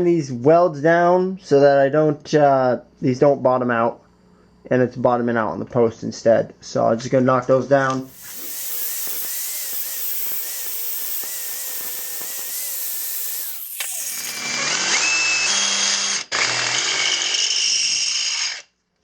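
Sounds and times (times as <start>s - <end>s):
power grinder grinding steel: 8.1s - 18.7s.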